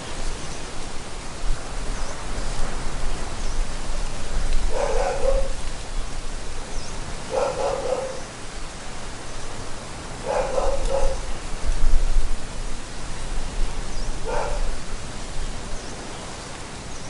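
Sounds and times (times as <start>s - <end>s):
beach surf: 0.0s - 17.0s
wind in trees: 0.0s - 17.0s
dog barking: 4.7s - 5.6s, 7.3s - 8.3s, 10.2s - 11.3s, 14.2s - 14.7s.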